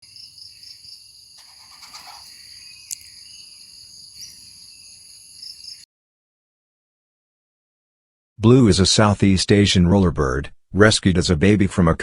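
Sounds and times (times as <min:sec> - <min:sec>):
insect chorus chirring: 0:00.0 - 0:05.8.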